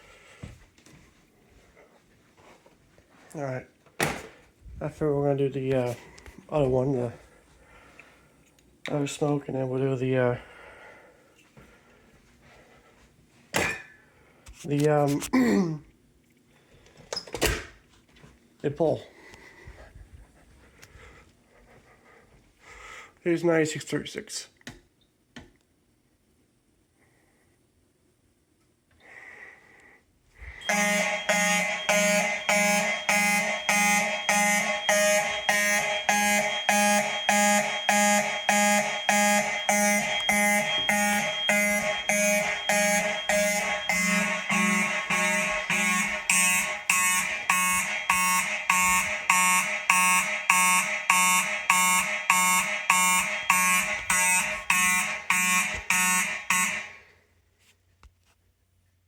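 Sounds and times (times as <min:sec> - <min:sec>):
fire alarm sounders pulsing: 0:30.6 - 0:57.0.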